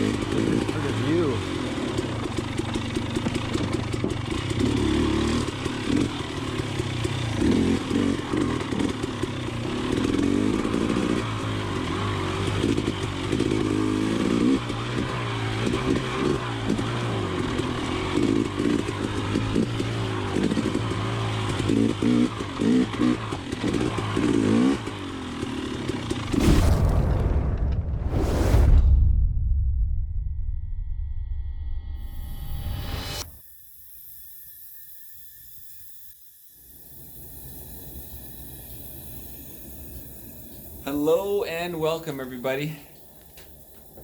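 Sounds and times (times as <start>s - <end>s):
dirt bike engine revving: 0.0s - 27.0s.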